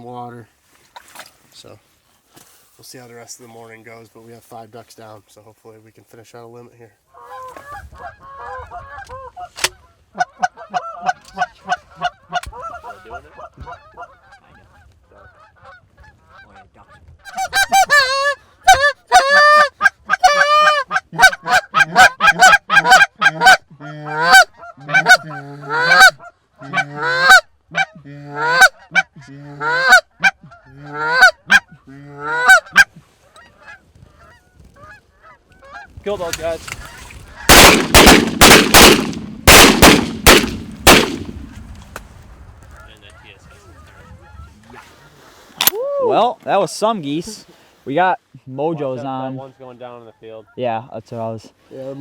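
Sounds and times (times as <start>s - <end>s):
geese clucking: 7.1s - 41.3s
geese honking: 17.3s - 41.3s.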